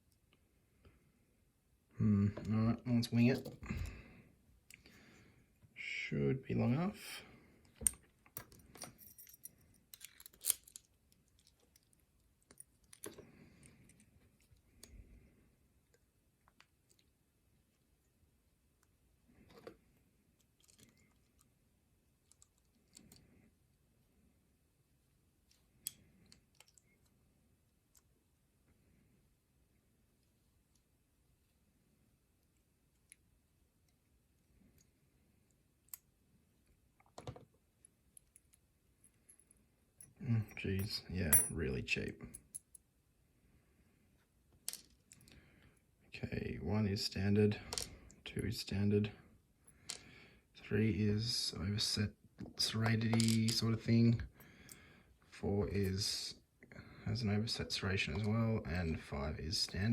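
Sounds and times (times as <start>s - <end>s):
small metal lock parts clicking: 7.7s - 13.2s.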